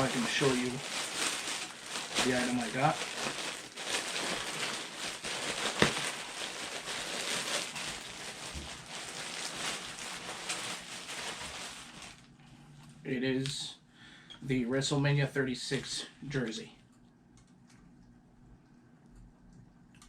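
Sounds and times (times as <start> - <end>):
packaging rustling and crinkling: 0.0 - 12.4.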